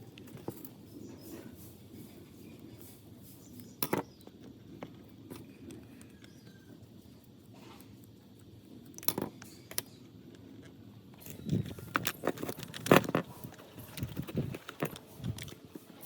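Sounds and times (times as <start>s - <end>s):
tools and parts clicking: 10.6s - 15.7s.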